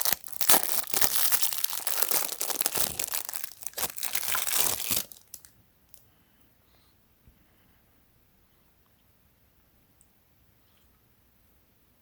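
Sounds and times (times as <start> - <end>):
plastic packaging crinkling: 0.0 - 5.5.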